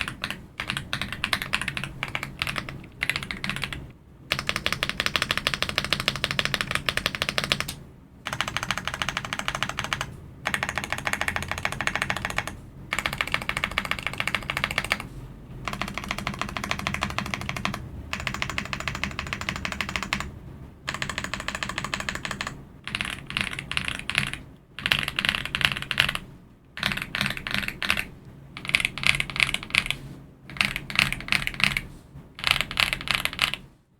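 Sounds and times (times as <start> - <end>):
fast typing on mechanical keyboard: 0.0 - 33.6.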